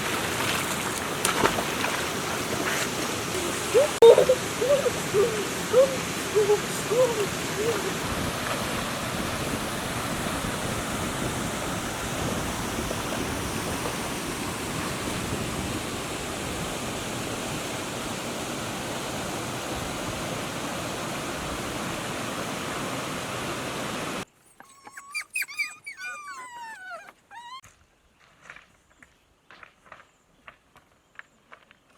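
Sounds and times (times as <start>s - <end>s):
rushing water: 0.0s - 24.3s
short high descending calls: 24.5s - 27.6s.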